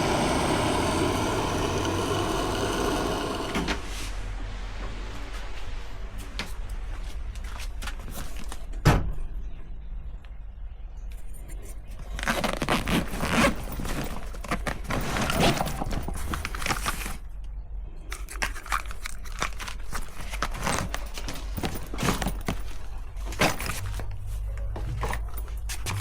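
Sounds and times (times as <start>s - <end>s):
objects scraping and knocking: 12.9s - 17.2s.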